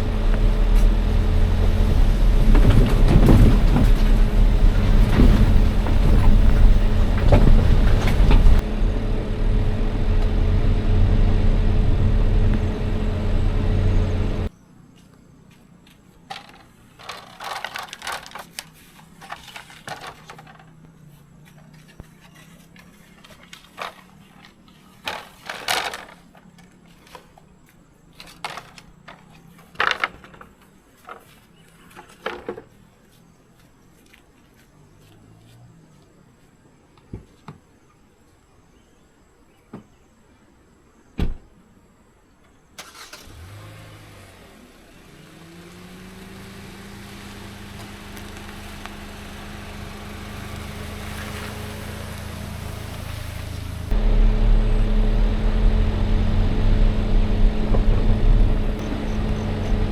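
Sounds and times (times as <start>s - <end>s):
engine rumble: 0.0s - 36.4s, 42.8s - 59.9s
clicks and rustles: 15.6s - 35.7s.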